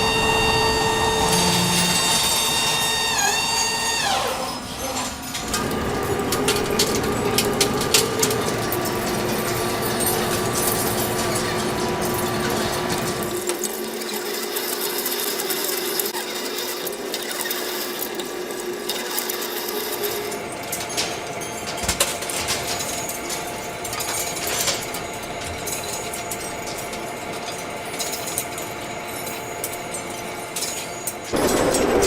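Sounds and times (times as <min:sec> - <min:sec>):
metal lathe whining: 0:00.0 - 0:21.8.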